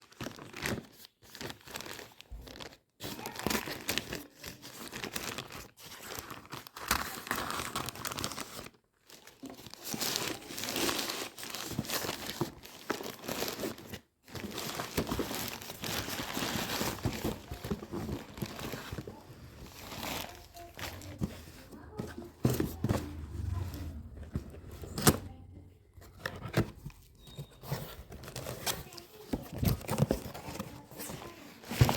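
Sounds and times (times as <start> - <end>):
plastic packaging crinkling: 0.0 - 23.6.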